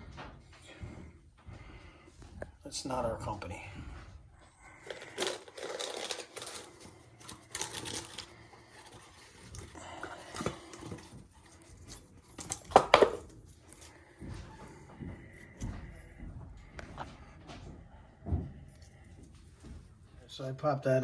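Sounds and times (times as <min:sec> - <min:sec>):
rustling of hand work: 0:03.5 - 0:20.3.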